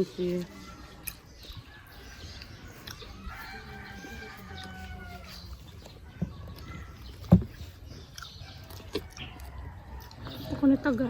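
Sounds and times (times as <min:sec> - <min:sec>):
rooster crowing: 0:03.2 - 0:05.4.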